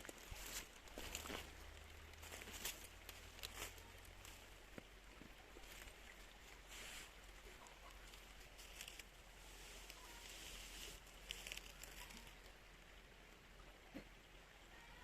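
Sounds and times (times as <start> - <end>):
faint river water flowing: 0.0 - 15.0.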